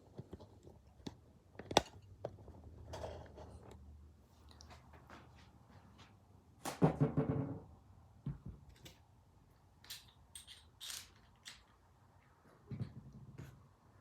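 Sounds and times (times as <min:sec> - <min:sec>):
small metal clicks: 0:09.8 - 0:11.8.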